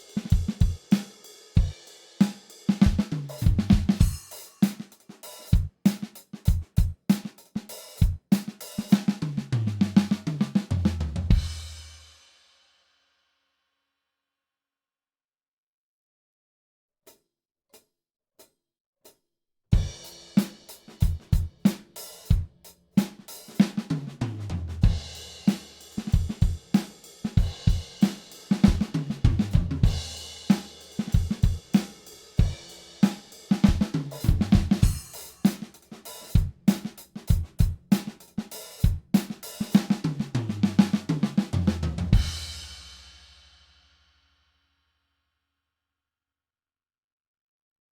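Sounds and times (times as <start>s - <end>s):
acoustic drum kit groove: 0.0s - 12.2s, 19.8s - 43.7s.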